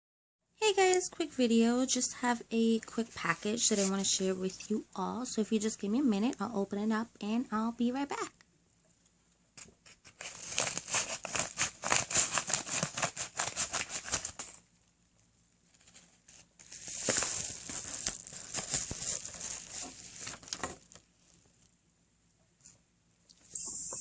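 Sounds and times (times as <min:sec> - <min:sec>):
packaging crinkling: 0:10.0 - 0:14.6, 0:15.7 - 0:21.5.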